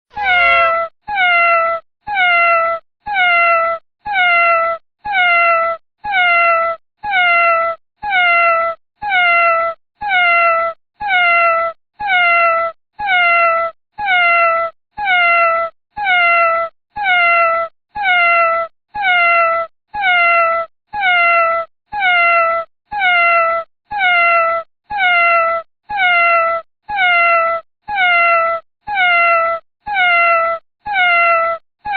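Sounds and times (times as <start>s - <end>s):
cat meowing: 0.1s - 31.9s.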